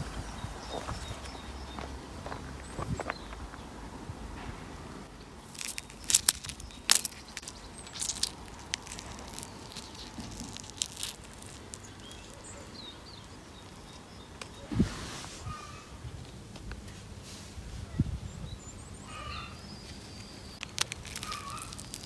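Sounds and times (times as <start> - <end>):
fruit crackling as crushed: 5.4 - 12.4, 20.5 - 22.0.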